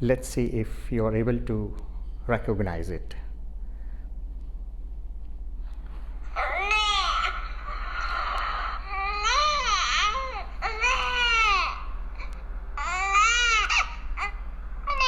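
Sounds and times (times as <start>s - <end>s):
infant crying: 6.3s - 15.0s.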